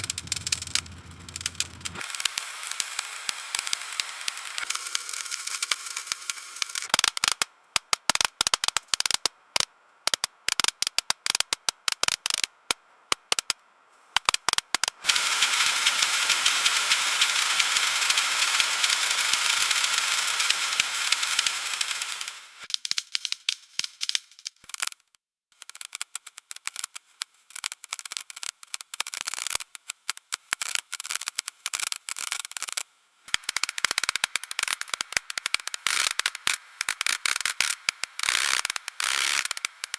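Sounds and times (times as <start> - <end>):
icy branches crackling and snapping: 0.0 - 9.2.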